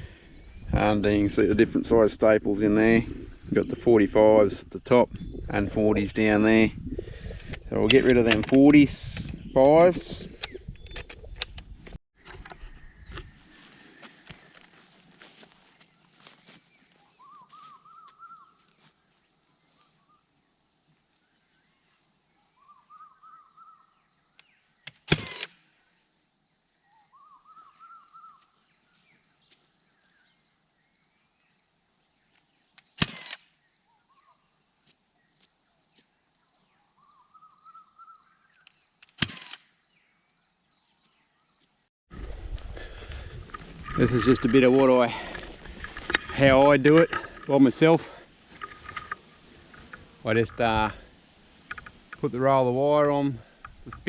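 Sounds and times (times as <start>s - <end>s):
bird singing rising notes: 16.7s - 18.6s, 22.4s - 24.8s, 26.8s - 28.5s, 36.4s - 39.1s
stapler firing staples: 24.9s - 25.6s, 33.0s - 33.4s, 39.2s - 39.6s.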